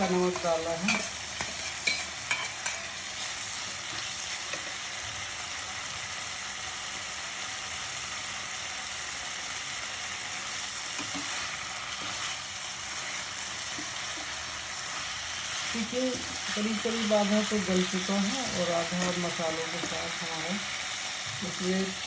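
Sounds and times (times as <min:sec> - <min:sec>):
utensil clicking against pan: 0:00.0 - 0:03.0
chicken sizzling in a pan: 0:00.0 - 0:22.0.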